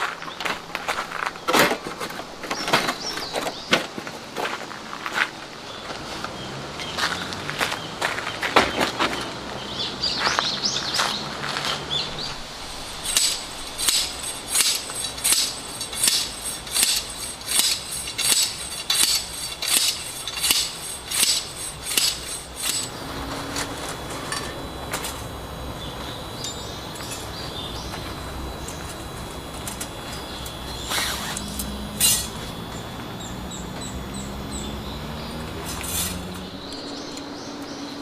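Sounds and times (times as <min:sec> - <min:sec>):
hammer striking metal tent peg: 0:13.1 - 0:22.9, 0:31.0 - 0:32.4.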